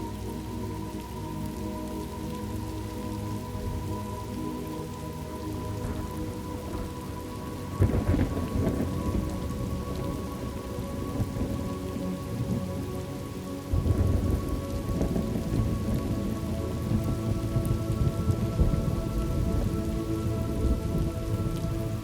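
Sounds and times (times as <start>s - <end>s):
steady rain: 0.0s - 22.0s
thunder rolling: 7.8s - 11.6s, 13.7s - 21.7s.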